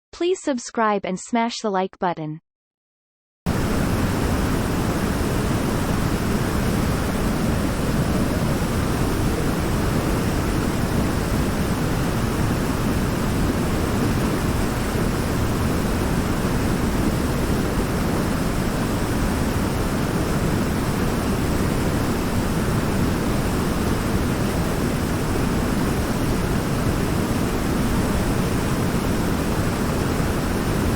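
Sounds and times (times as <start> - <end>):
waterfall rushing: 3.5 - 18.5.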